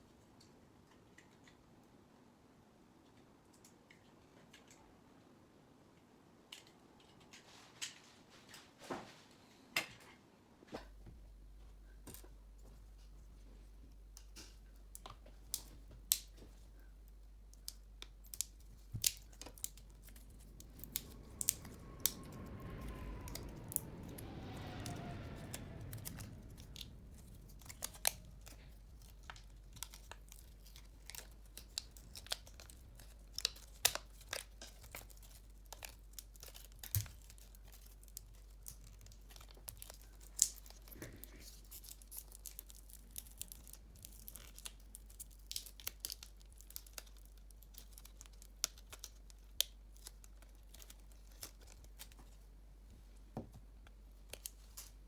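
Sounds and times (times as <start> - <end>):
rustling peeling noise: 12.8 - 52.5
faint falling whine: 18.7 - 33.2.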